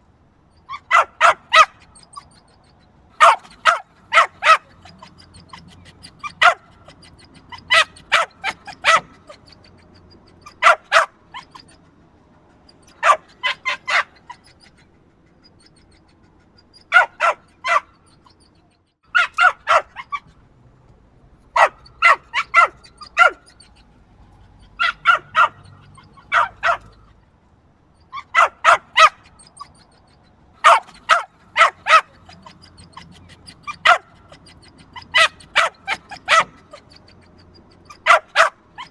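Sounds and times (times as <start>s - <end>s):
small dog barking: 0.7s - 2.6s, 3.2s - 11.8s, 12.8s - 14.7s, 16.7s - 18.2s, 19.1s - 20.3s, 21.5s - 23.8s, 24.6s - 27.1s, 28.1s - 29.9s, 30.6s - 38.9s.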